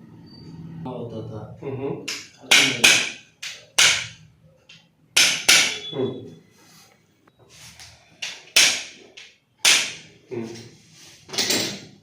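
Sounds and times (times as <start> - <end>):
sharp cracking joint impacts: 8.2 - 10.1.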